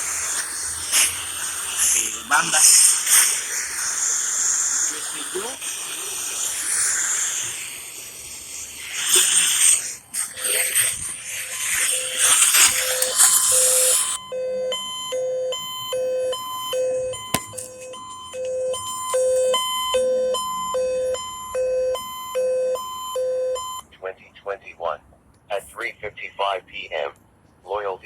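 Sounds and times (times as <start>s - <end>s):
harsh hissing noise: 0.0s - 14.2s
lower tone beeping: 11.3s - 23.8s
shrill electronic alert tone: 11.3s - 23.8s.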